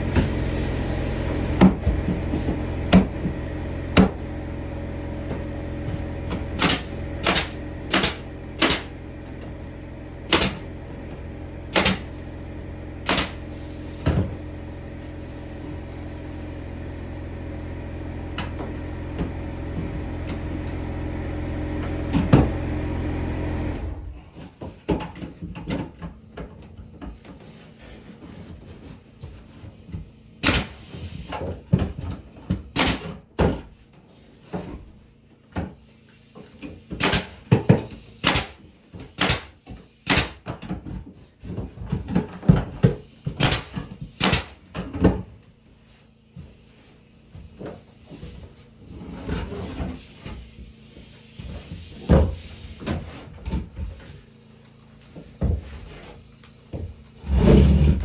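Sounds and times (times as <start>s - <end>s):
machine motor humming: 0.0s - 24.3s.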